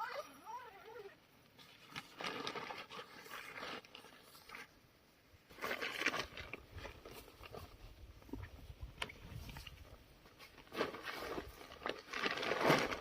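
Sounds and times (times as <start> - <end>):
rustling and crunching handling: 0.0 - 4.8, 5.4 - 13.0.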